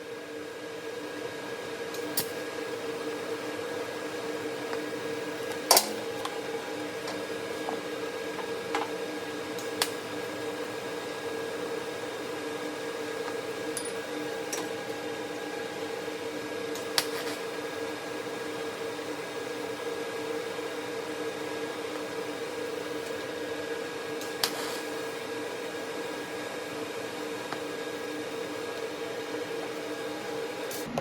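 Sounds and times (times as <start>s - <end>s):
machine hum: 0.0s - 31.0s.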